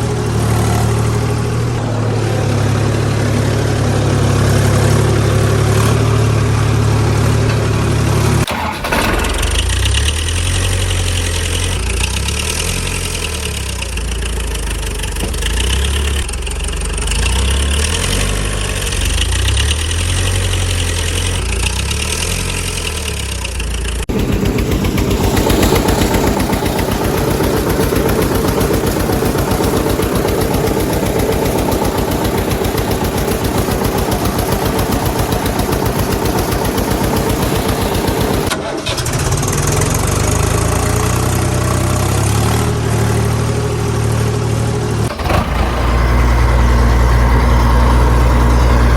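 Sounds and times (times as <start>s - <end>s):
idling engine putter: 0.0s - 48.9s
vehicle engines running: 0.0s - 48.9s.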